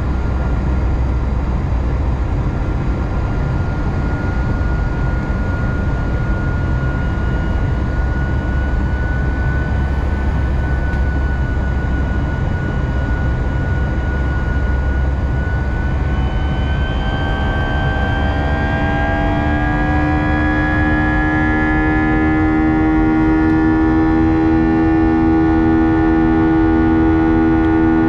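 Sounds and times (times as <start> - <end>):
jet engines low rumble: 0.0 - 28.0
thin steady whine: 0.0 - 28.0
climbing engine tones: 6.1 - 28.0.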